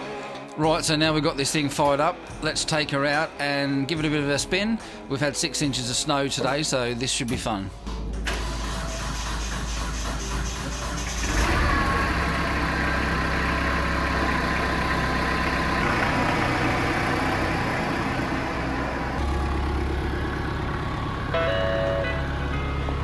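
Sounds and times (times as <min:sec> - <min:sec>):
tractor diesel engine running: 0:07.8 - 0:23.0.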